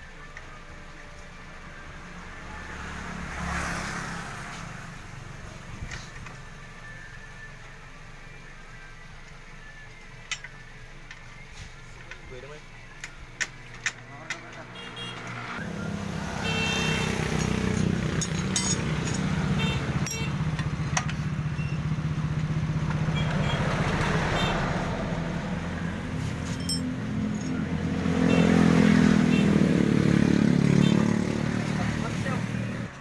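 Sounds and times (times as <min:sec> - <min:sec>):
motorcycle engine running: 0:15.0 - 0:32.9.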